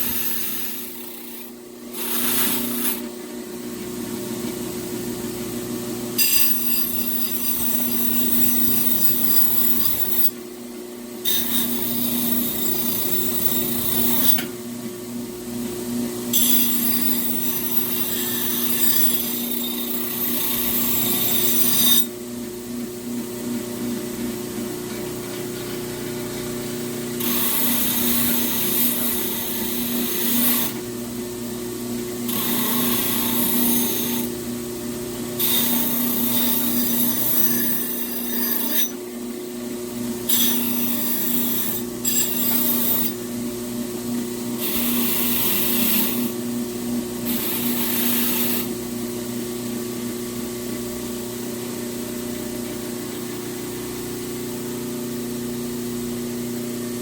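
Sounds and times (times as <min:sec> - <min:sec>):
electric grinder motor hum: 0:00.0 - 0:03.1, 0:16.4 - 0:22.1, 0:27.2 - 0:30.8, 0:32.3 - 0:34.4.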